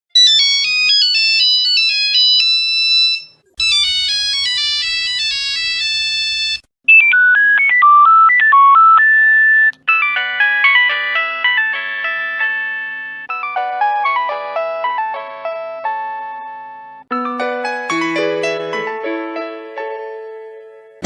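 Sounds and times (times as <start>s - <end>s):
mobile phone ringtones: 0.2s - 14.7s.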